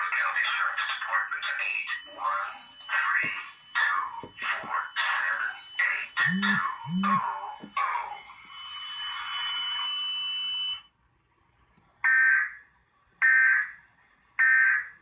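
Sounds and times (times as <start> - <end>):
warbling digital data bursts: 4.4 - 7.2.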